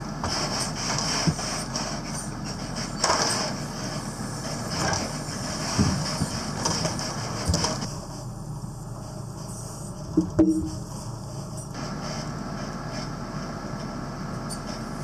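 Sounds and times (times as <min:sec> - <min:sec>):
heavy machinery running: 0:00.0 - 0:15.0
clanks and knocks: 0:04.7 - 0:07.9, 0:10.2 - 0:10.9.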